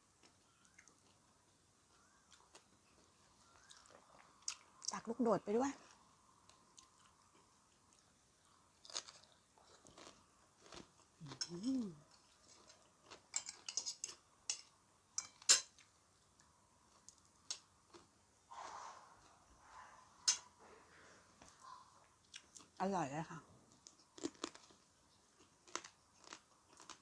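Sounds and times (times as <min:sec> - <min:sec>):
chewing with crisp crunches: 0:00.0 - 0:05.1, 0:05.8 - 0:18.2, 0:21.4 - 0:22.8, 0:23.6 - 0:27.0
person humming: 0:11.3 - 0:12.0.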